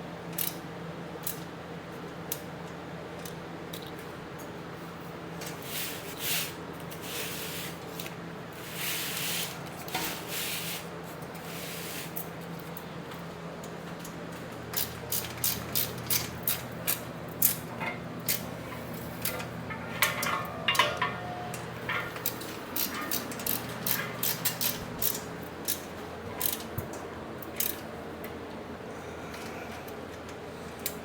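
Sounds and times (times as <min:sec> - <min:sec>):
hand tool clicking tightening bolts: 0:19.2 - 0:26.7, 0:27.4 - 0:27.8.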